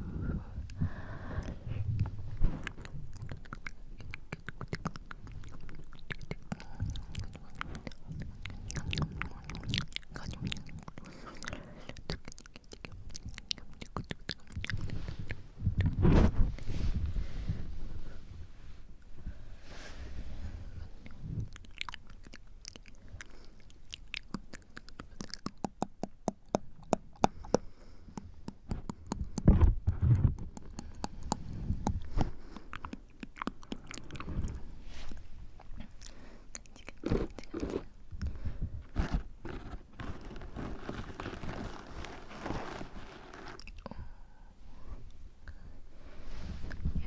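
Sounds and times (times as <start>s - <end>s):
tongue and lip clicks: 1.4s - 16.2s, 21.0s - 34.7s, 35.6s - 38.4s.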